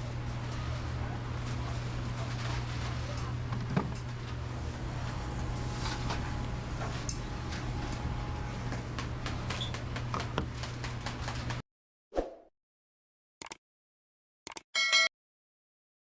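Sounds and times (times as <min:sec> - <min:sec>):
low kitchen hum: 0:00.0 - 0:11.6.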